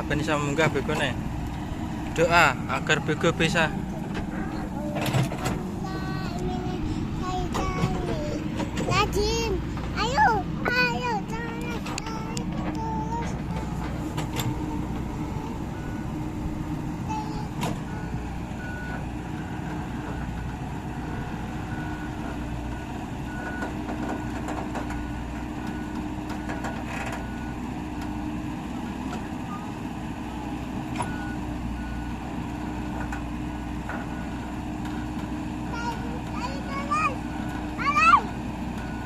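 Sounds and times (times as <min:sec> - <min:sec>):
excavator diesel engine running: 0:00.0 - 0:39.0.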